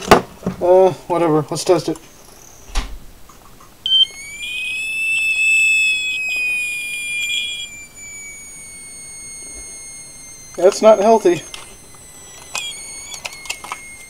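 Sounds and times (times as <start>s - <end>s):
smoke detector click: 3.3s - 14.0s
high smoke alarm tone: 3.8s - 14.0s.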